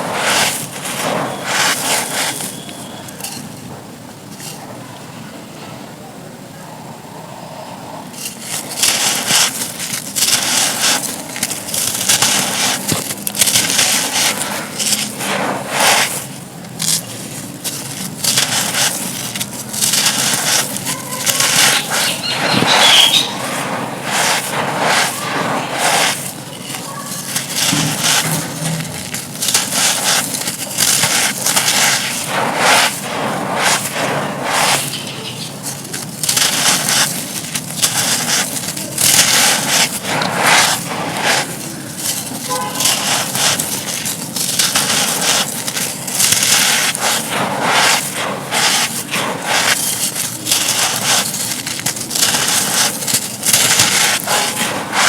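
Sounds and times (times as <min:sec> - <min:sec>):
dry material crunching: 0:00.0 - 0:04.7, 0:08.1 - 0:55.0.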